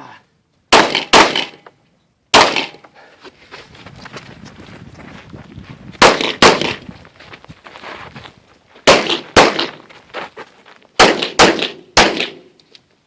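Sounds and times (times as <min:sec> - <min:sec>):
pistol shots with echo: 0:00.7 - 0:01.6, 0:02.3 - 0:02.8, 0:06.0 - 0:06.8, 0:08.9 - 0:09.8, 0:11.0 - 0:12.5.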